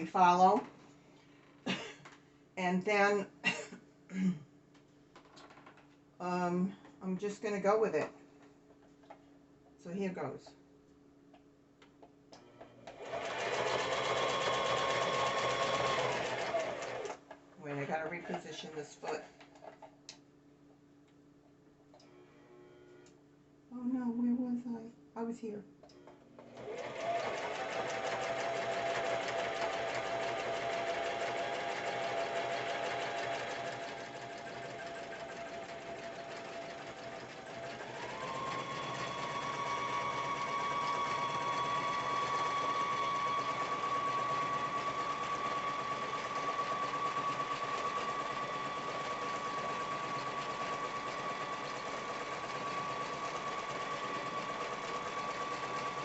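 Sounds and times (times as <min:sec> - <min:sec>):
sewing machine motor whining: 0:12.8 - 0:17.2, 0:26.4 - 0:56.0.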